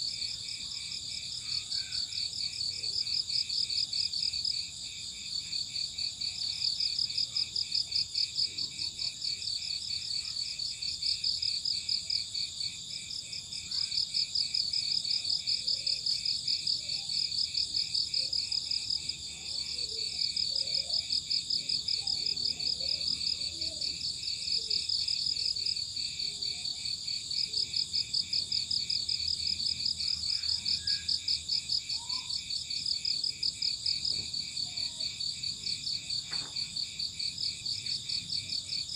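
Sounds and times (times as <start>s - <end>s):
crickets chirping: 0.1s - 38.9s.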